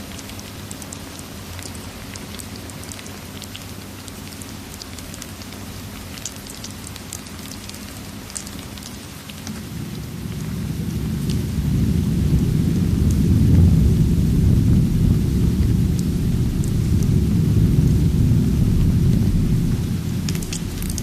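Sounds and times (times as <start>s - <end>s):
raindrop ticks: 0.0s - 21.0s
steady rain: 0.0s - 21.0s
low thunder rumbling: 9.3s - 21.0s.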